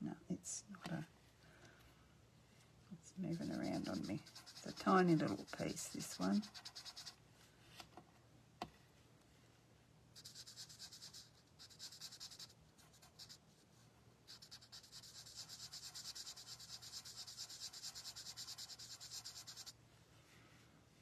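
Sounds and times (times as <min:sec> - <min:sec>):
marker scribbling on card: 0:03.3 - 0:07.2, 0:10.2 - 0:13.4, 0:14.3 - 0:19.8.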